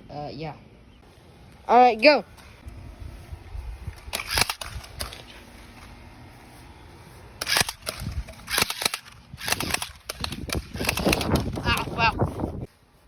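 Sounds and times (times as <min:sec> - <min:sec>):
airsoft guns firing: 0:07.4 - 0:11.9.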